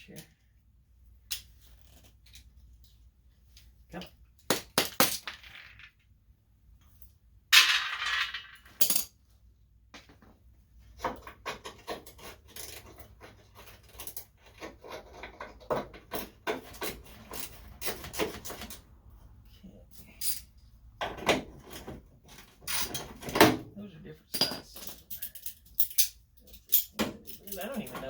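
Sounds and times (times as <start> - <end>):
metal tools clinking: 19.9 - 20.5, 24.3 - 28.0.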